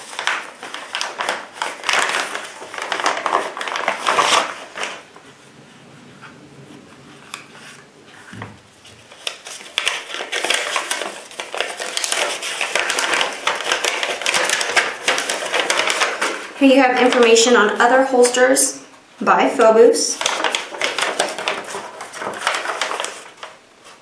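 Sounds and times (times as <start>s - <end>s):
plastic packaging rustling and clicking: 0.0s - 5.4s, 7.3s - 17.6s, 20.1s - 24.0s
low thump: 5.3s - 9.1s.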